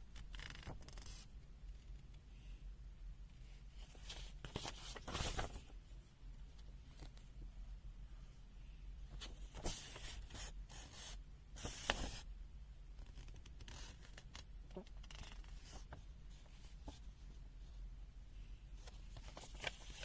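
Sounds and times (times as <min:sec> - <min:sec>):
paper pages rustling: 0:03.8 - 0:05.7, 0:09.1 - 0:10.5, 0:11.6 - 0:12.2, 0:18.8 - 0:20.0.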